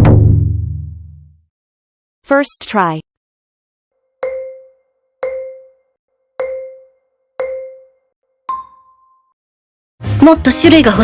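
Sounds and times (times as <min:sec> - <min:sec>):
higher ping: 0:04.2 - 0:09.3
short mallet-like pings: 0:04.2 - 0:09.4.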